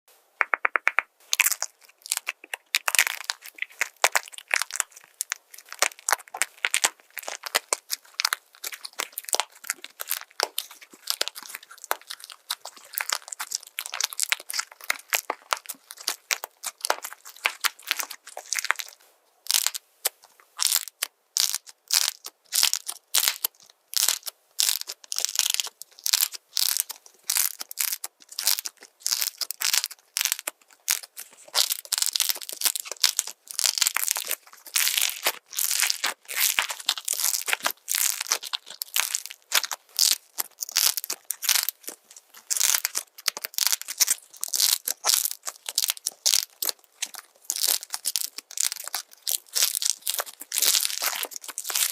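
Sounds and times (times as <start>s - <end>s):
slime crackling and crunching: 0.5s - 51.9s.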